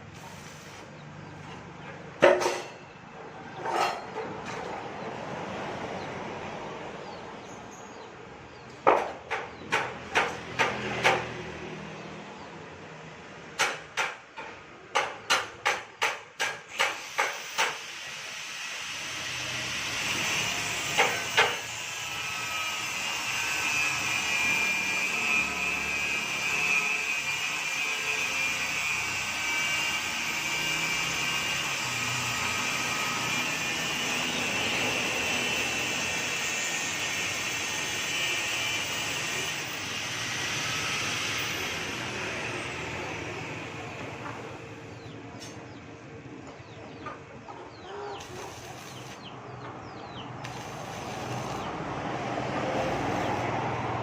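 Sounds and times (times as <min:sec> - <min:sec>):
arc welder crackling hiss: 0:00.0 - 0:01.0, 0:16.4 - 0:24.2, 0:48.2 - 0:49.3, 0:50.4 - 0:53.9
hammer knocking on steel bars: 0:08.9 - 0:11.4, 0:13.6 - 0:17.4.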